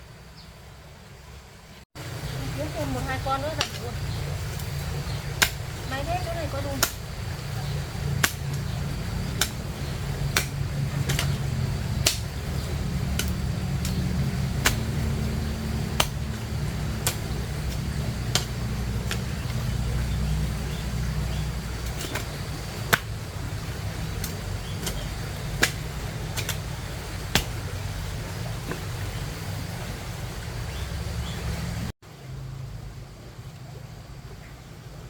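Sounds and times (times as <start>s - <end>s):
steady low rumble: 0.0s - 35.0s
digging tool chopping into soil: 4.5s - 27.6s.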